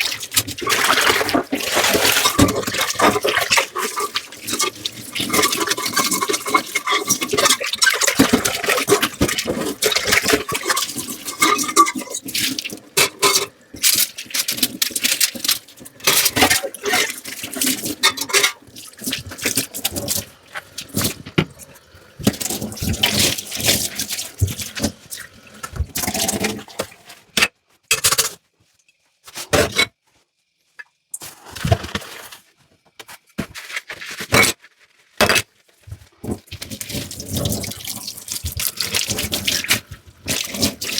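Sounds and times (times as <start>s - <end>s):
tap water running and splashing: 0.0s - 27.3s, 35.9s - 40.9s
dishes and utensils clinking: 0.1s - 20.3s.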